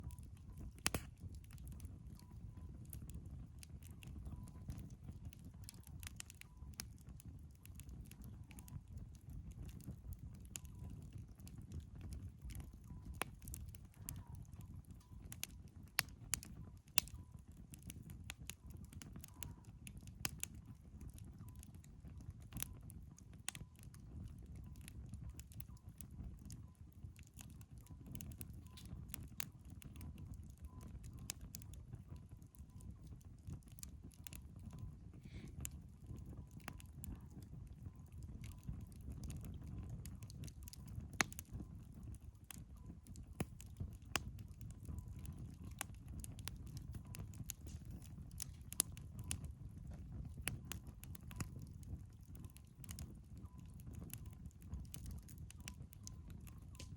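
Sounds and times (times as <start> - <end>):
firewood crackling and popping: 0.0 - 56.9
low rumble of flames: 0.0 - 56.9.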